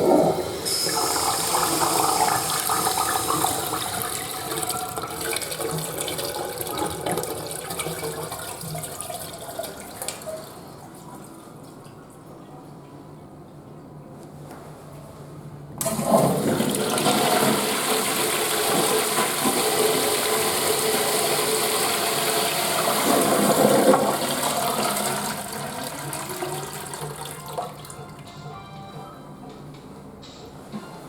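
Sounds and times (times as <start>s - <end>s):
toilet flushing: 0.0s - 12.1s, 15.8s - 28.6s.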